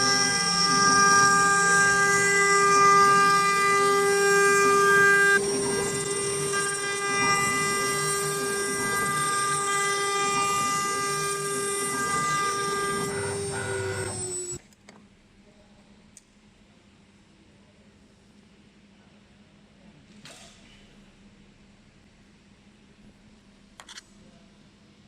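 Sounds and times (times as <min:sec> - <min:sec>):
router spindle whining: 0:00.0 - 0:14.6.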